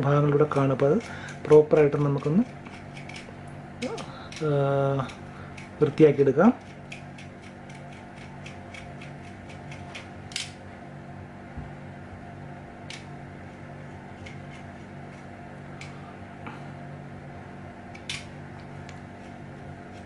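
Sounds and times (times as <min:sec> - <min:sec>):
steady low hum: 0:00.0 - 0:20.0
knife scraping metal jack: 0:01.7 - 0:03.3.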